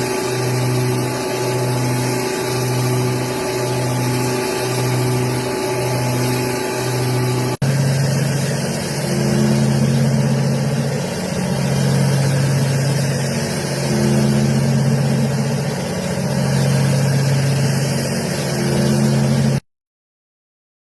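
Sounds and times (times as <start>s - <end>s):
milling machine cutting metal: 0.0s - 19.6s.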